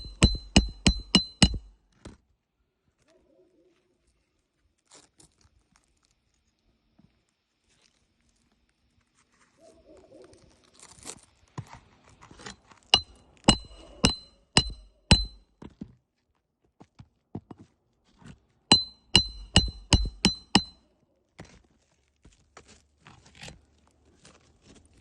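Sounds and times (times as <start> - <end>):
hammer driving nails into shingles: 0.0 - 1.7, 13.0 - 15.4, 18.7 - 20.7
scraping and rustling of shingles: 21.4 - 25.0.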